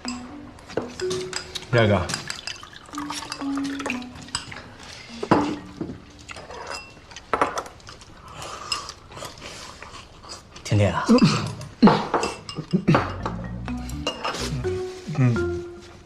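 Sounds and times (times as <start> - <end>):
dishes and utensils clinking: 0.0 - 7.8, 11.2 - 15.3.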